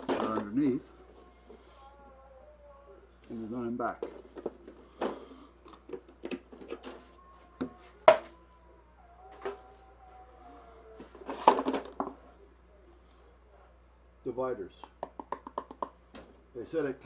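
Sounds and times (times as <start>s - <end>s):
knocks and clatters of handling: 0.0s - 0.7s, 3.9s - 8.3s, 11.0s - 12.3s.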